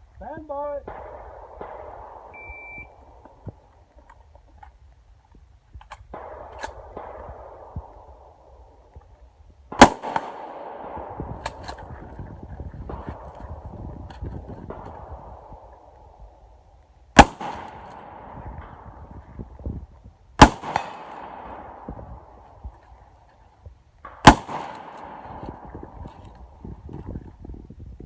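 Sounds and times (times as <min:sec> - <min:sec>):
loud rifle shot: 0:00.8 - 0:03.4, 0:06.1 - 0:08.2, 0:09.7 - 0:11.9, 0:17.2 - 0:19.1, 0:20.4 - 0:22.4, 0:24.1 - 0:26.3
shot timer beep: 0:02.4 - 0:03.0.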